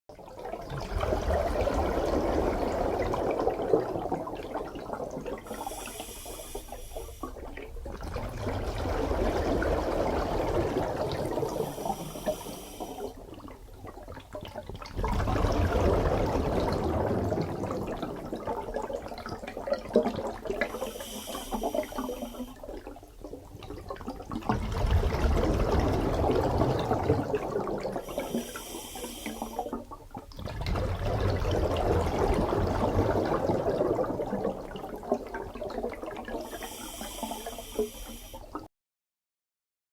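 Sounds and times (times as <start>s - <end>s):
exhaled bubbles underwater: 0.1s - 38.7s
high breathing hiss: 5.5s - 7.4s, 11.5s - 13.1s, 20.7s - 22.6s, 28.0s - 29.8s, 36.4s - 38.5s.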